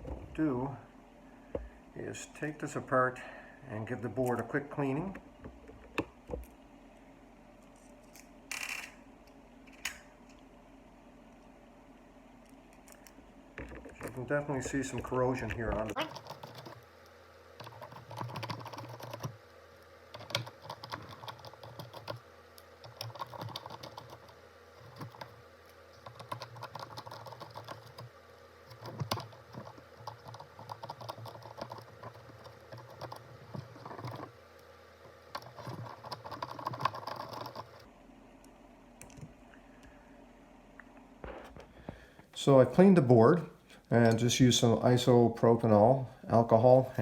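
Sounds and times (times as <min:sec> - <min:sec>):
faint steady hum: 0:00.0 - 0:47.0
light clicking and scratching: 0:28.7 - 0:34.3, 0:35.3 - 0:37.9.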